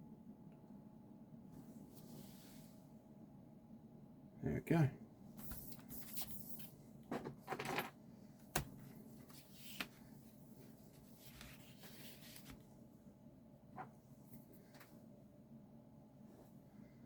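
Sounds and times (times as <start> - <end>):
laptop rustle or scrape: 5.4 - 6.8, 9.1 - 12.7.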